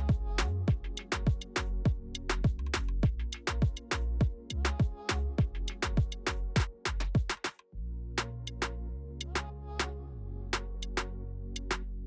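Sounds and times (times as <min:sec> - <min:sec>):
electronic music with drum-machine beat: 0:00.0 - 0:07.6, 0:10.6 - 0:11.9.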